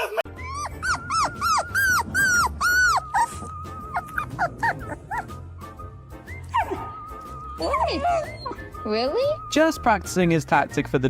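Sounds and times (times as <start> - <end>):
dog whining: 0.1 - 5.6, 6.3 - 9.5
small dog yelping: 0.4 - 5.3, 6.5 - 7.0.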